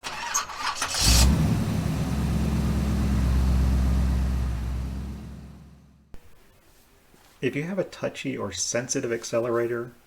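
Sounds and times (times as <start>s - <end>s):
truck engine starting and idling: 0.0s - 6.1s.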